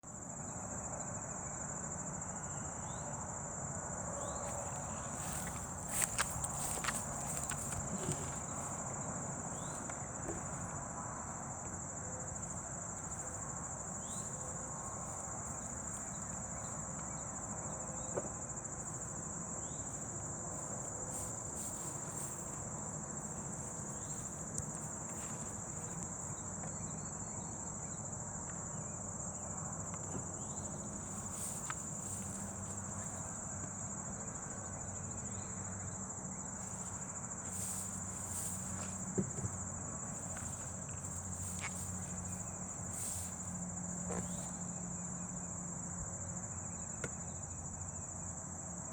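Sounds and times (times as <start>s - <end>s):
crickets chirping: 0.0s - 48.9s
honey bees humming: 4.4s - 10.8s.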